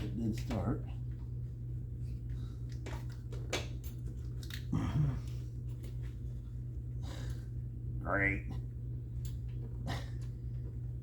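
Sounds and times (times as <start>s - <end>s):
steady low hum: 0.0s - 11.0s
person grunting: 4.7s - 5.3s.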